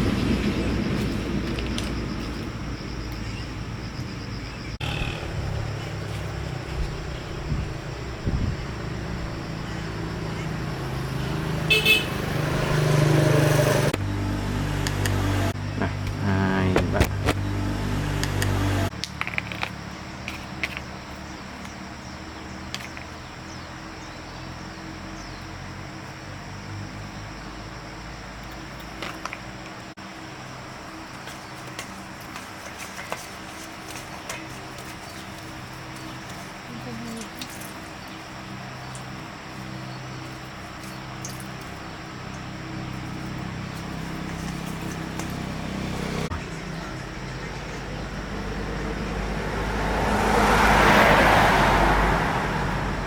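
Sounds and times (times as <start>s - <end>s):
quiet engine hum: 0.0s - 18.9s, 30.4s - 53.0s
generator engine running: 4.8s - 18.9s, 41.7s - 49.4s.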